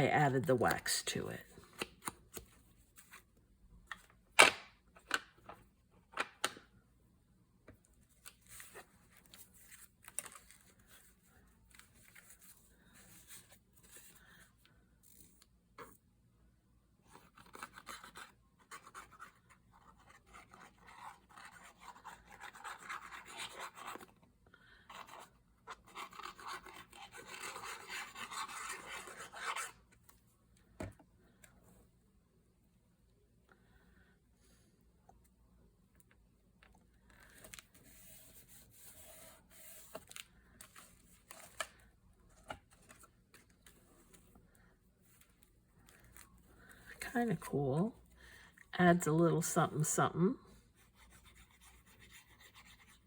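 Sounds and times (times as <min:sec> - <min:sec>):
rubbing and scratching on paper: 0:17.1 - 0:24.2, 0:24.9 - 0:29.9, 0:37.2 - 0:40.2, 0:50.7 - 0:53.0.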